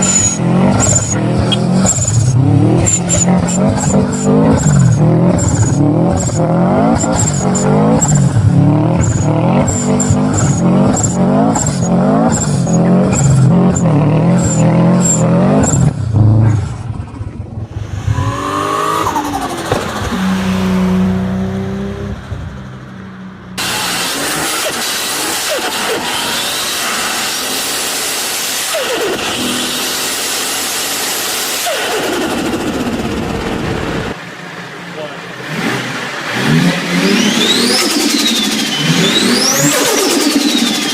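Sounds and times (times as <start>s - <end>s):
stuttering turbo flutter: 0.0s - 34.2s, 35.5s - 40.9s
car engine revving: 0.0s - 40.9s
hiss of released boost: 17.7s - 20.4s.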